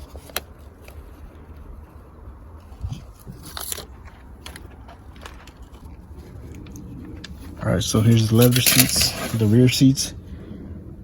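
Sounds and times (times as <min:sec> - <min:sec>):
clicks and crunches of handling: 0:02.8 - 0:07.4, 0:08.0 - 0:09.5
steady low rumble: 0:05.7 - 0:11.0.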